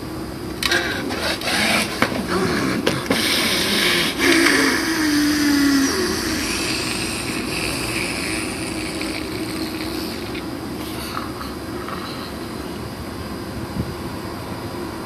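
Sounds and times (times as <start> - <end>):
steady noisy hiss: 0.0 - 15.0
groaning gasp: 0.6 - 11.6.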